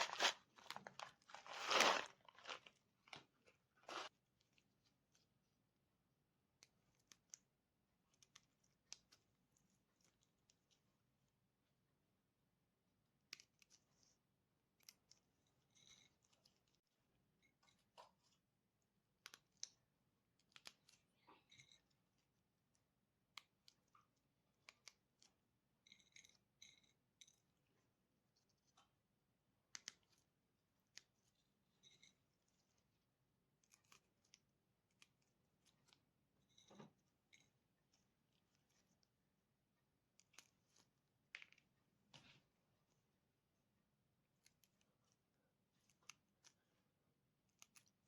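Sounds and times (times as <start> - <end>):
small objects clicking and tapping: 19.1 - 22.2, 23.3 - 27.6, 40.1 - 42.4.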